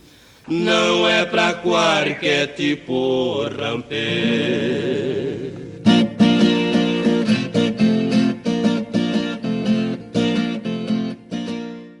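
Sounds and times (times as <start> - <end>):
strummed guitar instrumental: 4.1 - 12.0.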